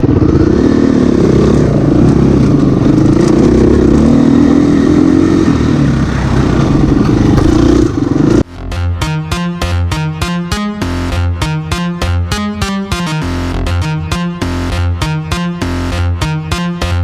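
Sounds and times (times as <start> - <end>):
two-stroke engine running: 0.0 - 8.4.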